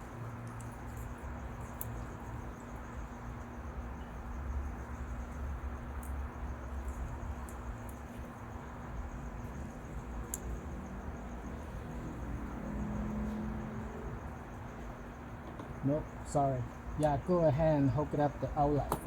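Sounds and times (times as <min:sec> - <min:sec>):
faint insect trill: 0:00.0 - 0:19.0
low background hum: 0:00.0 - 0:19.0
small clicks of hose parts: 0:00.4 - 0:02.0.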